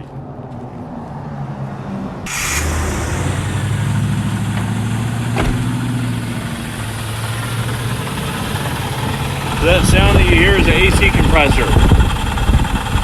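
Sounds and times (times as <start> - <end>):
car engine starting and idling: 2.2 - 13.0
compressor chattering noise: 2.3 - 13.0.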